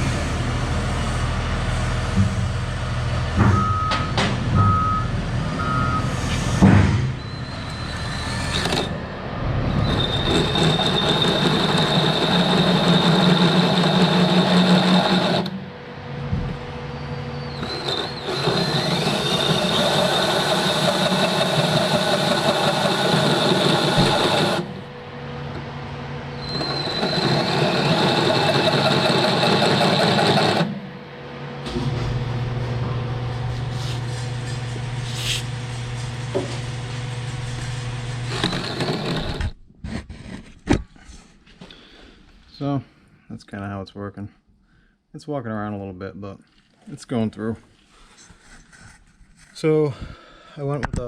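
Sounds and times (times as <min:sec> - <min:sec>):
power drill with hole saw cutting: 0:07.4 - 0:09.0, 0:09.7 - 0:15.6, 0:17.5 - 0:24.9, 0:26.4 - 0:30.8, 0:38.1 - 0:39.6.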